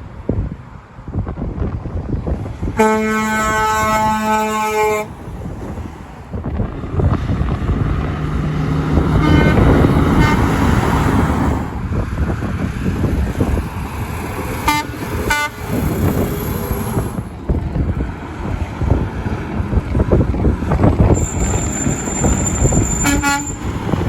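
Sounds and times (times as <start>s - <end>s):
truck passing: 0.0s - 24.0s
horn toots: 2.8s - 5.2s, 9.0s - 11.2s, 14.6s - 16.2s, 21.1s - 23.8s.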